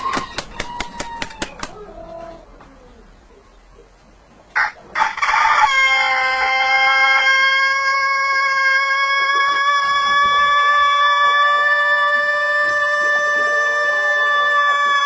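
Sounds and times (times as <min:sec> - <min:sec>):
long steady rooster crow: 0:00.0 - 0:01.6, 0:04.6 - 0:15.0.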